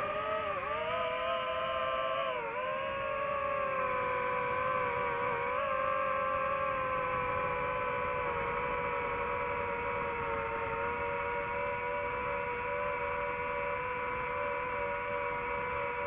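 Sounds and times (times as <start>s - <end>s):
drone propellers droning: 0.0s - 16.0s.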